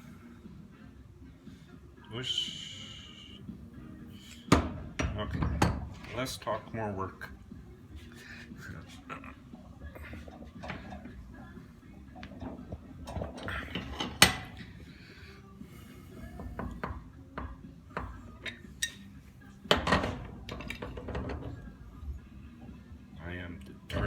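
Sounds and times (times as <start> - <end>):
metal tools clinking on pump parts: 12.4 - 14.7.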